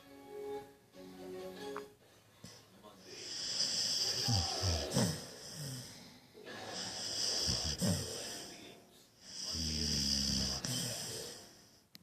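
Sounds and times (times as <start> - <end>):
dog snoring: 3.2 - 6.0, 6.7 - 8.6, 9.2 - 11.6.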